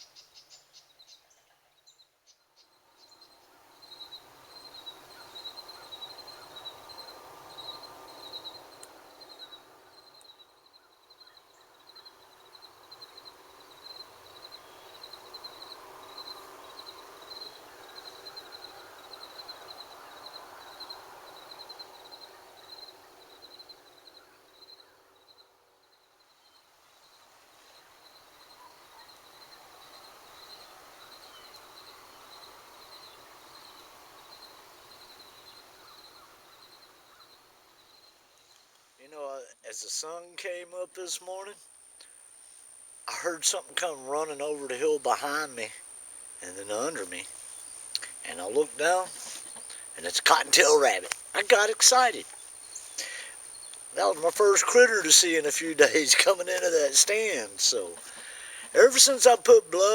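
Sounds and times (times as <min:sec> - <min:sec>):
insect trilling: 0:41.5 - 0:59.9.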